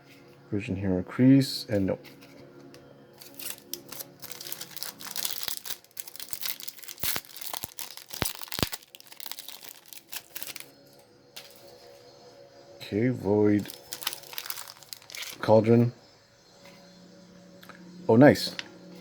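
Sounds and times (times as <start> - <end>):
foil wrapper crinkling and tearing: 3.2 - 10.7, 13.6 - 15.6.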